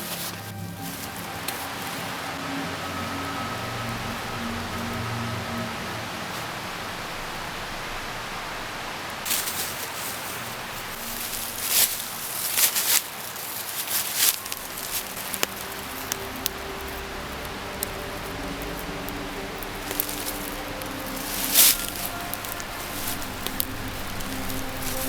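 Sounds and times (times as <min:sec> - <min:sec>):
mountain river rushing: 0:00.0 - 0:25.0
loud rustling: 0:03.6 - 0:25.0.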